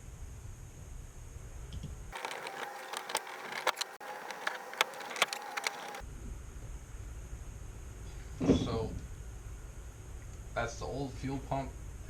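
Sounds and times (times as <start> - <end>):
hose clamp clicking and rattling: 2.2 - 6.0.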